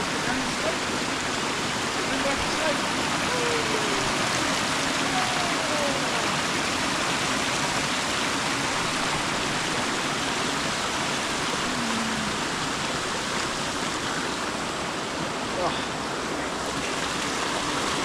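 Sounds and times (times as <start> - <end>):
water rushing over rocks: 0.0 - 18.0.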